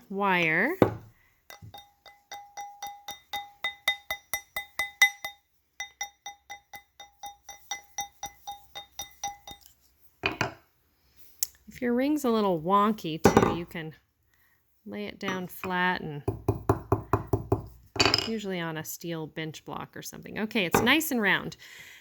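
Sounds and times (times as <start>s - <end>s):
hammer tapping metal mandrel: 0.8s - 10.6s, 20.8s - 21.0s.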